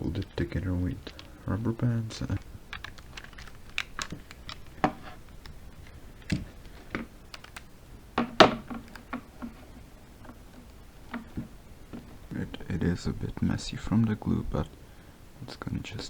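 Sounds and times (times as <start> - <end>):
rubber bands snapping: 2.2 - 9.6.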